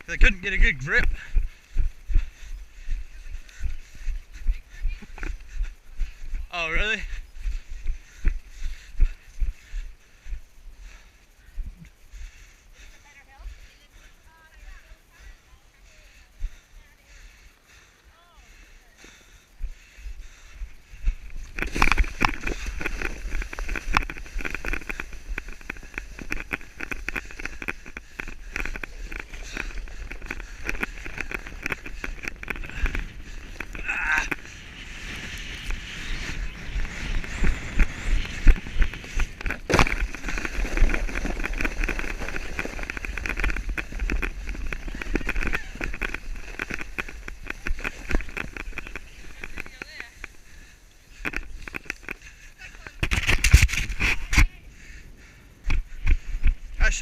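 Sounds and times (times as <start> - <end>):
footsteps crunching in snow: 20.2 - 54.6
microphone handling rumble: 20.6 - 50.4, 52.9 - 54.6
clothing and gear rustling: 20.6 - 54.6.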